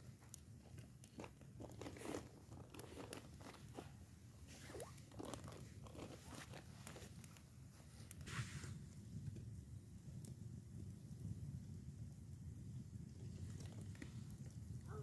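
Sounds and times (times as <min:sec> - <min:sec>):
faint crunching and clicks: 0:00.0 - 0:08.3, 0:13.0 - 0:15.0.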